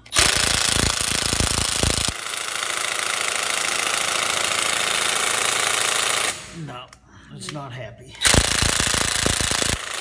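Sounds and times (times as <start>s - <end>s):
impact wrench hammering: 0.0s - 6.5s, 8.2s - 10.0s.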